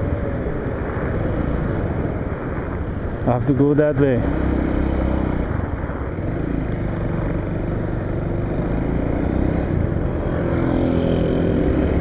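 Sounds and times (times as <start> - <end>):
road and wind noise: 0.0 - 12.0
motorcycle engine running: 3.8 - 12.0.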